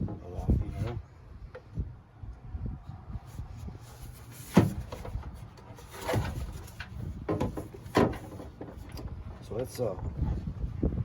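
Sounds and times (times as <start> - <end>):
parts knocking and clunking: 4.3 - 10.1.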